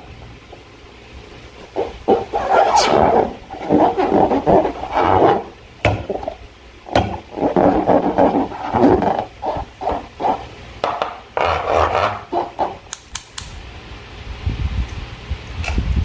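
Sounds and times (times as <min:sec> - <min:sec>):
slime and balloons squishing: 0:01.7 - 0:12.9
sharp clicks: 0:12.9 - 0:13.6.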